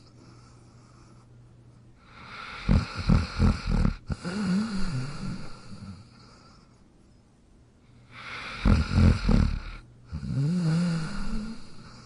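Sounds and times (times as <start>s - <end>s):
dog snoring: 2.0s - 6.8s, 8.1s - 12.0s.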